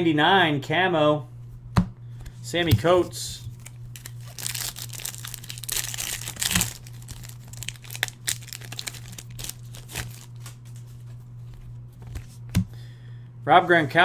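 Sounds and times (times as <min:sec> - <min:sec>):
wrapper crinkling: 0:02.8 - 0:12.2
cards clicking and sliding: 0:08.9 - 0:12.7.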